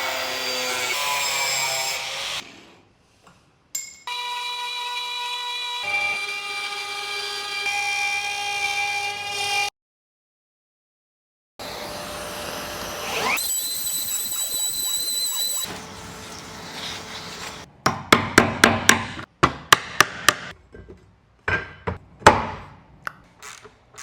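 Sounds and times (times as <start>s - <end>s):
power tool whining: 11.6s - 17.7s.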